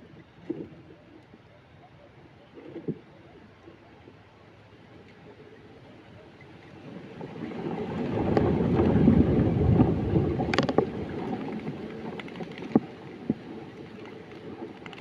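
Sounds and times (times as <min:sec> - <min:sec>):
wind rumbling on microphone: 0:06.7 - 0:15.0.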